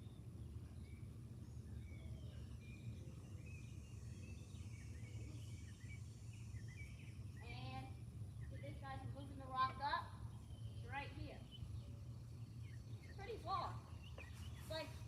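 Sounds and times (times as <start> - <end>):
birds chirping: 0.0 - 15.0
faint low background rumble: 0.0 - 15.0.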